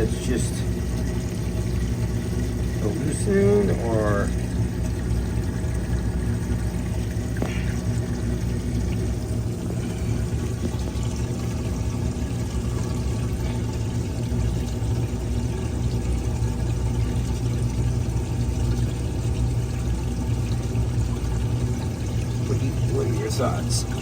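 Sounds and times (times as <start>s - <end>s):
low steady hum: 0.0s - 24.0s
water rushing down drain pipe: 0.0s - 24.0s.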